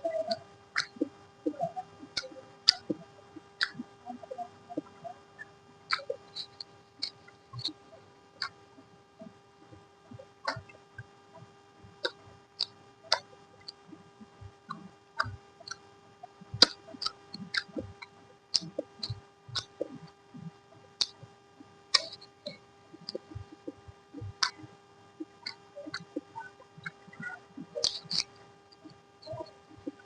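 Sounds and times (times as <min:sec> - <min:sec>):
faint steady hum: 0:00.0 - 0:30.0
person chewing with wet smacks: 0:05.9 - 0:07.8, 0:16.6 - 0:20.2.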